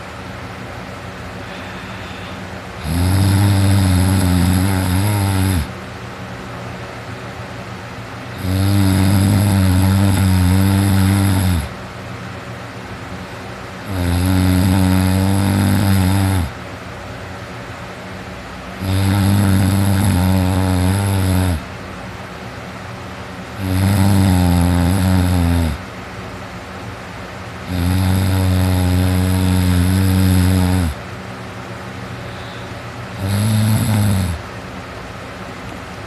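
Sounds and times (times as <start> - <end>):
steady hiss: 0.0 - 36.0
person snoring heavily: 1.4 - 5.8, 8.3 - 11.8, 13.8 - 16.6, 18.8 - 21.7, 23.5 - 25.9, 27.6 - 31.0, 32.2 - 34.5.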